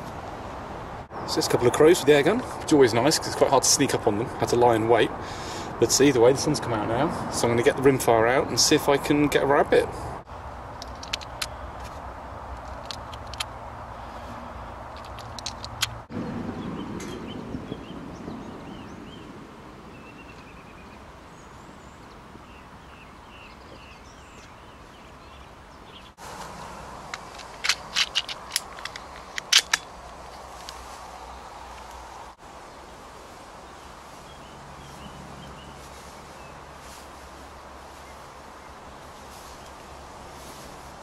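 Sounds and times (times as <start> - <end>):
faint birdsong: 10.8 - 41.0
sharp clicks: 12.5 - 13.6, 14.9 - 16.1, 27.1 - 30.8.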